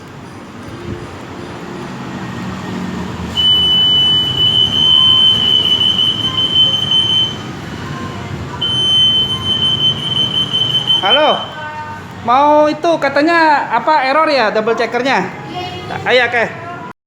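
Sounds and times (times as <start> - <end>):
high-pitched alarm tone: 3.3 - 11.7.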